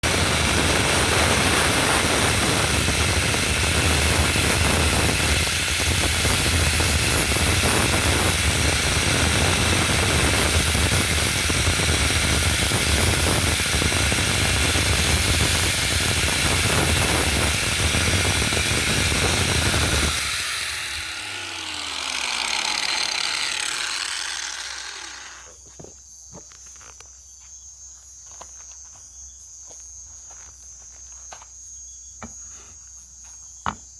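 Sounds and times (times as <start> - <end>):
power tool working wood: 0.0 - 25.6.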